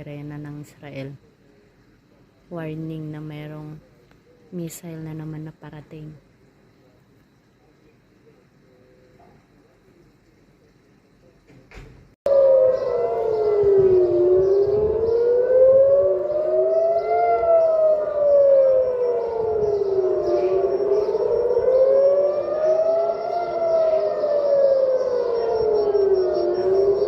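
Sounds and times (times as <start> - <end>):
air-raid siren wailing: 12.3 - 27.0
second siren overlapping: 12.3 - 27.0.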